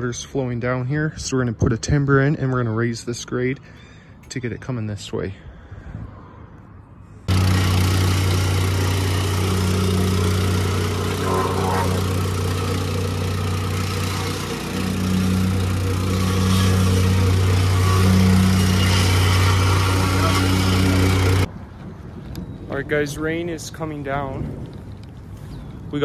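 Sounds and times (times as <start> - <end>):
engine running: 7.3 - 21.5.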